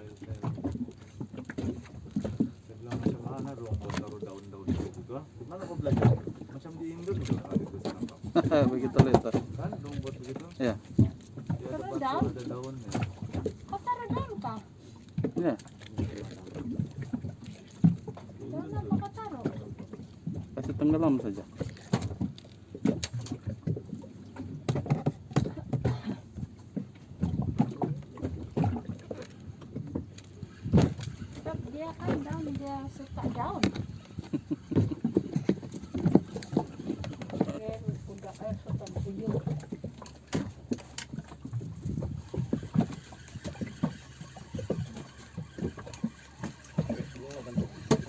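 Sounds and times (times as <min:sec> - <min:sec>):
water sloshing: 0:00.0 - 0:48.0
knocks on a boat: 0:05.7 - 0:14.6, 0:15.2 - 0:42.9.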